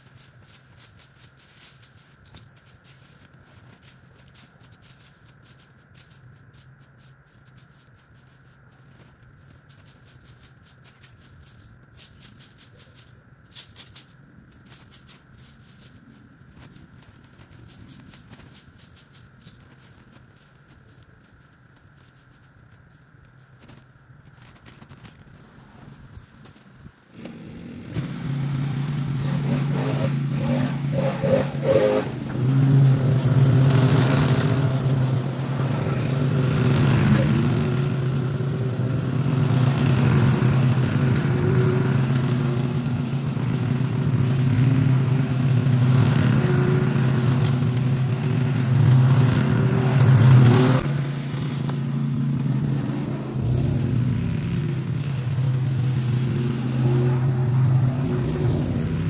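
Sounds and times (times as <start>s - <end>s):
small gasoline engine running: 27.1s - 59.0s.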